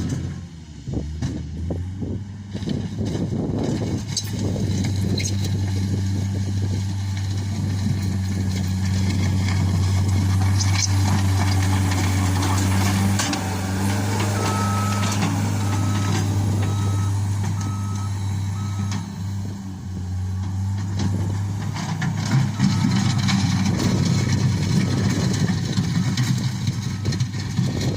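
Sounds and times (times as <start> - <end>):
diesel engine running: 0.0 - 27.9
reversing alarm beeps: 14.3 - 19.2, 22.6 - 23.3.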